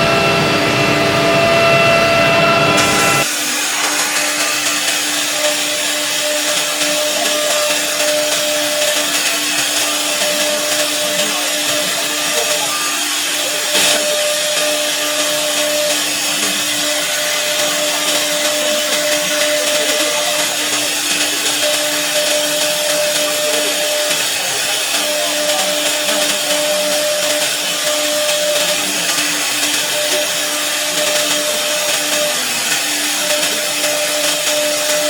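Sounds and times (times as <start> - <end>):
router spindle whine: 0.0 - 35.0
short sharp sound: 1.9 - 7.0.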